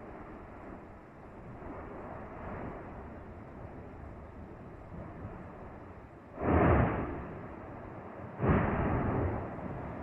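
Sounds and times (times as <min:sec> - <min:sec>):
volcano explosive blast: 0:06.4 - 0:07.4.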